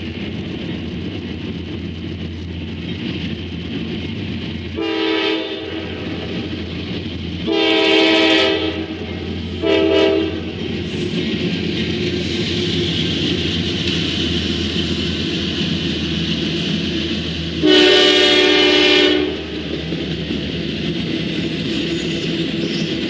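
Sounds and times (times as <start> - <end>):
train rumble: 0.0 - 23.0
locomotive air horn blasts: 4.8 - 6.0, 7.4 - 9.0, 9.6 - 10.5, 17.6 - 19.4.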